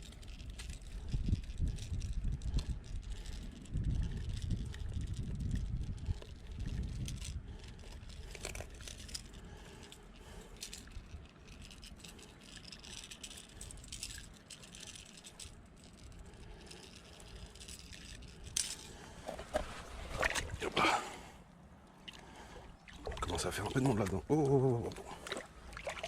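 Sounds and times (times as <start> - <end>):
faint clicks and rattling: 0.0 - 19.8
low wind noise: 0.0 - 26.0.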